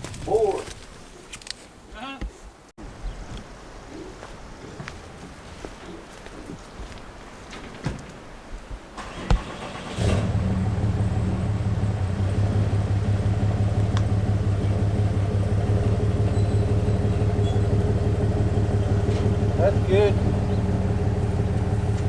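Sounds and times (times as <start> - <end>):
truck engine starting and running: 8.9 - 22.0.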